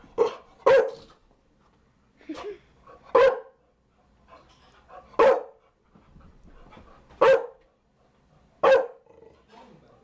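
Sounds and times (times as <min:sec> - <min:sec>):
dog barking: 0:00.2 - 0:01.1, 0:03.1 - 0:03.6, 0:05.2 - 0:05.6, 0:07.2 - 0:07.6, 0:08.6 - 0:09.0.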